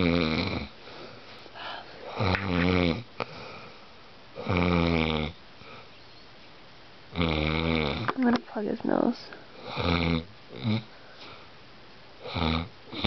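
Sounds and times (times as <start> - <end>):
man snoring loudly: 0.0 - 0.7, 4.4 - 5.4, 7.1 - 8.1, 12.2 - 13.0.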